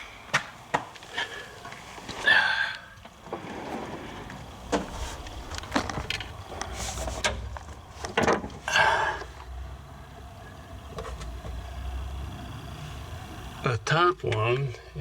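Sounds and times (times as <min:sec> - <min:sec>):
drawer scraping slide: 0:03.2 - 0:09.6.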